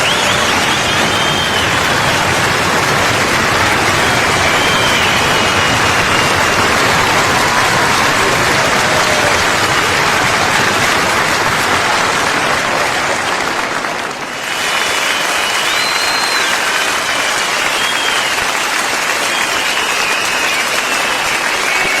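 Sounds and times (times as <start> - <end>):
whistles: 0.0 - 2.2, 3.6 - 7.2, 14.4 - 22.0
crowd applause: 0.0 - 22.0.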